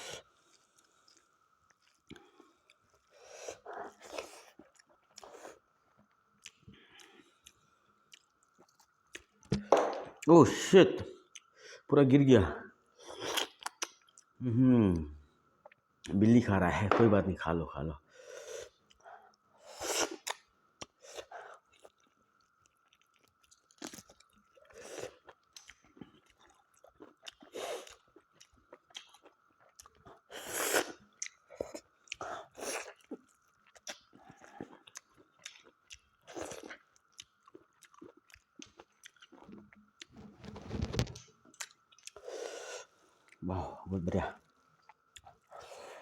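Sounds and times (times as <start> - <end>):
chewing and crunching meat: 0.0 - 9.5, 20.1 - 42.2, 44.2 - 46.0.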